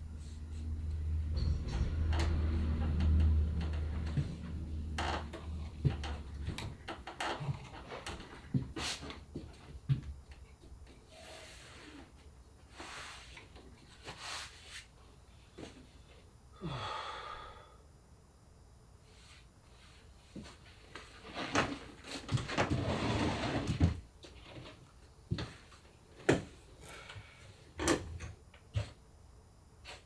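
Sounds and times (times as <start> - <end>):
low hum: 0.0 - 6.8
rustling or scraping: 19.2 - 24.8.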